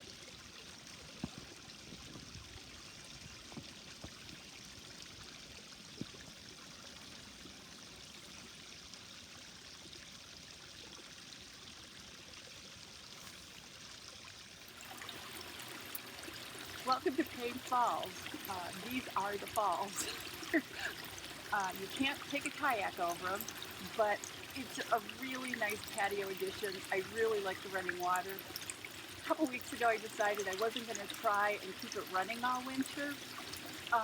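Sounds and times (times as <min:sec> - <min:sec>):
waterfall splashing into pond: 0:00.0 - 0:34.0.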